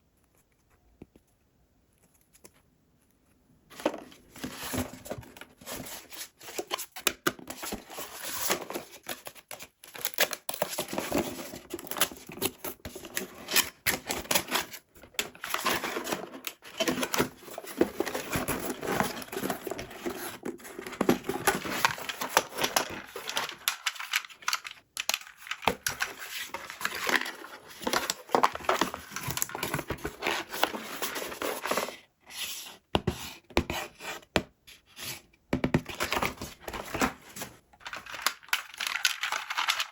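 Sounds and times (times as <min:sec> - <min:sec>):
packaging crinkling and tearing: 0:35.9 - 0:39.9.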